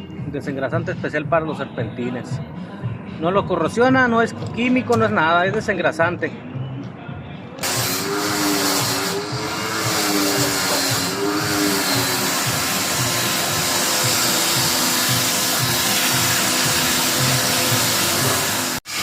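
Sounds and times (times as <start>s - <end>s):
pressure washer motor hum: 7.6s - 19.0s.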